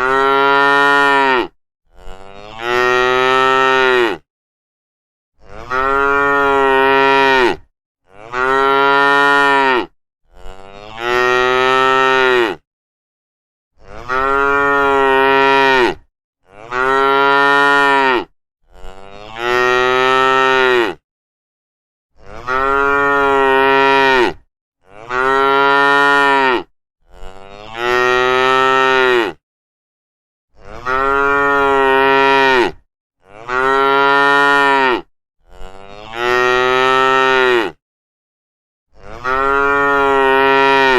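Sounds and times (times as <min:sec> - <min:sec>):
cow mooing: 0:00.0 - 0:04.2, 0:05.4 - 0:12.6, 0:13.8 - 0:21.0, 0:22.2 - 0:29.4, 0:30.6 - 0:37.8, 0:39.0 - 0:40.9.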